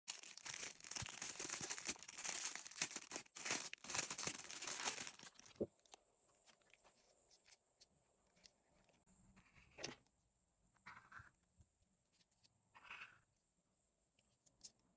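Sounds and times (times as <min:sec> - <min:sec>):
packaging torn and crinkled: 0:00.1 - 0:05.6.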